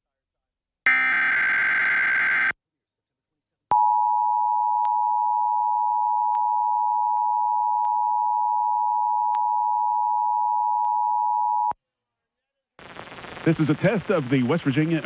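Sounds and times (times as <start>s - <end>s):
two-tone alarm: 0.9s - 2.5s.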